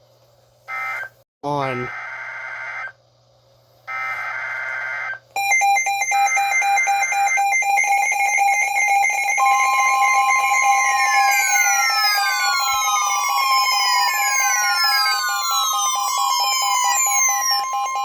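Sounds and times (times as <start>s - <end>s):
multi-tone electronic alarm beeping: 3.9s - 18.0s
steady warning tone: 4.9s - 18.0s.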